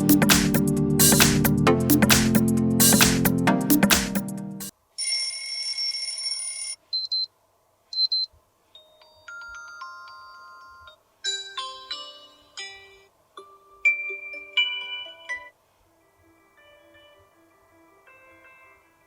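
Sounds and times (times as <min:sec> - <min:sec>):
electronic beat: 0:00.0 - 0:04.7
overlapping held notes: 0:00.0 - 0:04.7.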